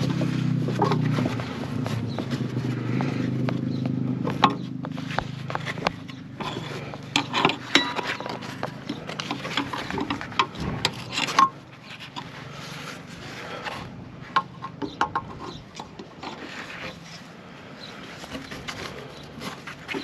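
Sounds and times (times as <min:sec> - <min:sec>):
sharp clicks and knocks: 0:00.0 - 0:12.3, 0:14.3 - 0:17.0
rubber rubbing and scraping on metal: 0:00.0 - 0:20.0.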